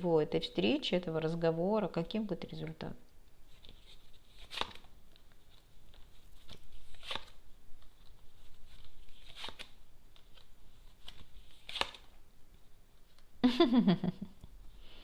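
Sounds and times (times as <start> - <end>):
cards shuffling: 3.5 - 12.2
cards snapping: 3.6 - 4.9, 5.9 - 8.0, 8.8 - 12.1.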